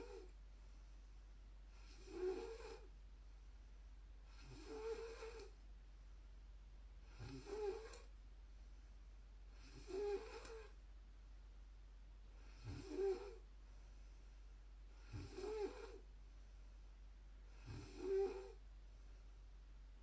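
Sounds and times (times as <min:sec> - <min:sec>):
woman snoring: 0:00.0 - 0:00.3, 0:01.8 - 0:02.9, 0:04.3 - 0:05.6, 0:07.1 - 0:08.1, 0:09.6 - 0:10.8, 0:12.4 - 0:13.4, 0:15.0 - 0:16.0, 0:17.5 - 0:18.6.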